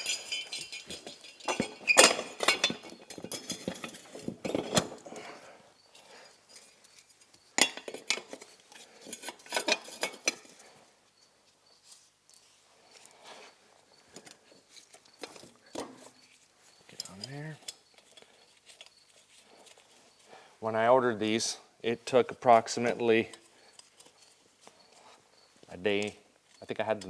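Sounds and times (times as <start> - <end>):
metal tools clinking: 0.0 - 5.3, 5.9 - 10.7, 14.1 - 20.0, 22.4 - 25.2.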